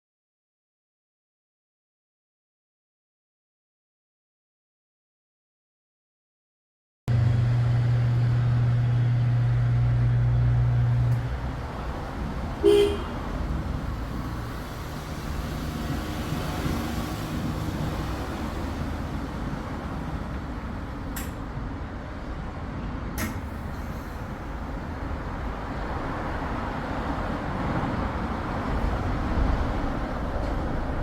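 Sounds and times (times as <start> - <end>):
car engine running: 7.1 - 12.0.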